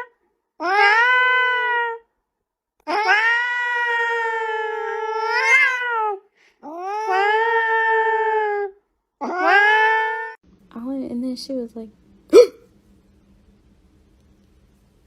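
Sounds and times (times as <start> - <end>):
cat yowling: 0.0 - 2.1, 2.8 - 10.4.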